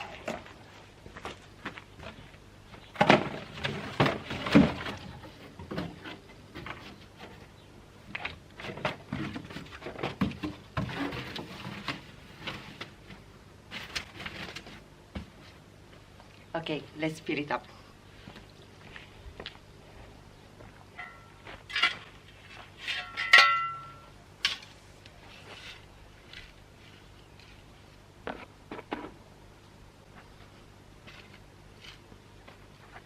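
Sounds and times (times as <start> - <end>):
objects knocking being set down: 3.0 - 6.0.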